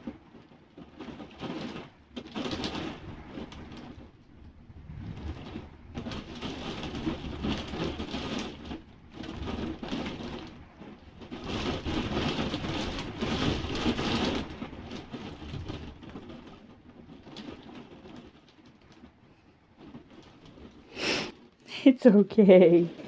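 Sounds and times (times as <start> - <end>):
rain battering: 0.0 - 23.0
storm wind gusts: 2.4 - 16.2.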